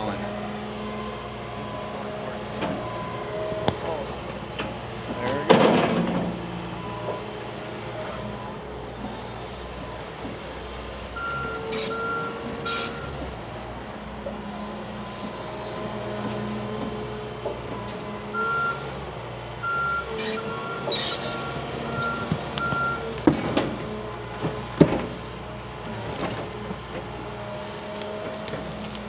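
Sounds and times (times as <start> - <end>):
excavator diesel engine running: 0.0 - 29.0
reversing alarm short high beeps: 11.2 - 13.2, 18.4 - 18.8.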